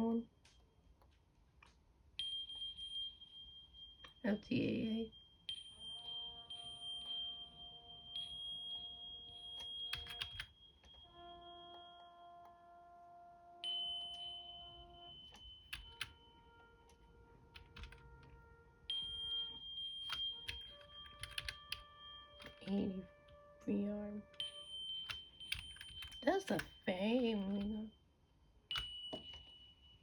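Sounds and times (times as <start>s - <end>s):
high-pitched smoke alarm tone: 2.2s - 12.8s, 13.5s - 17.2s, 18.2s - 30.0s
low buzzy alarm tones: 4.2s - 30.0s
sharp clicks: 9.6s - 10.5s, 15.3s - 16.2s, 20.1s - 22.8s.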